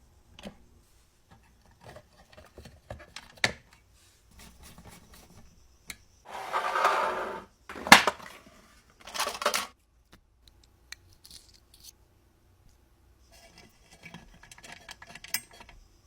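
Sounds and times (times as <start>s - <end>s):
rasping scrape: 6.3s - 8.4s.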